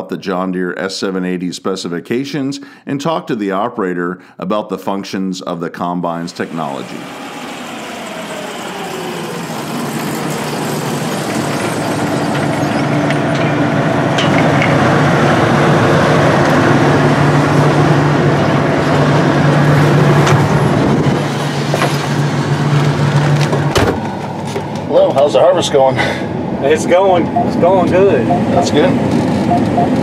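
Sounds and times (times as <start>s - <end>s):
combine engine hum: 6.2s - 30.0s
threshing machine noise: 6.2s - 30.0s.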